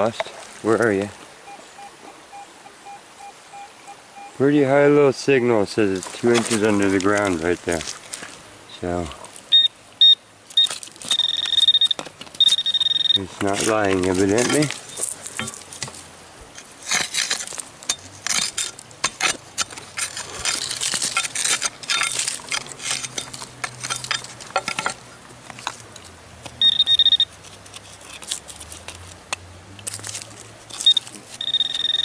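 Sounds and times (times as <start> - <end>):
metal detector beep: 1.4 - 4.4, 9.5 - 13.3, 26.6 - 27.3, 30.8 - 32.0
digging tool scraping gravelly soil: 5.5 - 9.3, 10.5 - 32.0.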